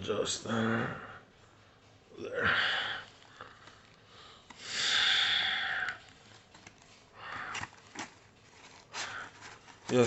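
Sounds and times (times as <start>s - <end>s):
soft handling sounds: 5.8s - 10.0s.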